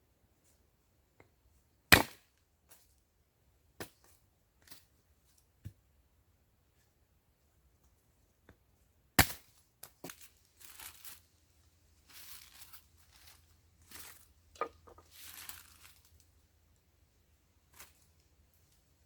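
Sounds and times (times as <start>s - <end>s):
crinkly rustling: 10.0s - 16.3s, 17.7s - 18.8s.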